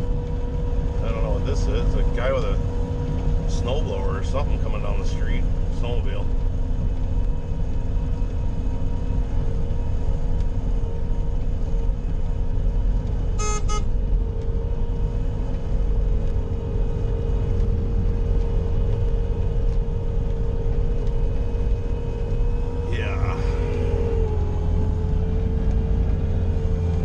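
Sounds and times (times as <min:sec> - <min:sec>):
loader engine rumbling with whine: 0:00.0 - 0:27.0
short beeps: 0:13.4 - 0:13.9.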